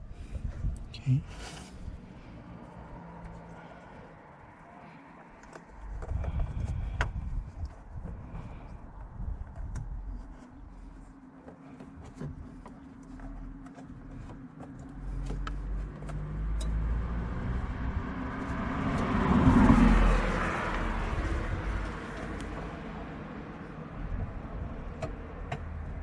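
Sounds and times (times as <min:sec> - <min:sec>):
car passing: 0:01.3 - 0:08.8, 0:14.8 - 0:26.0.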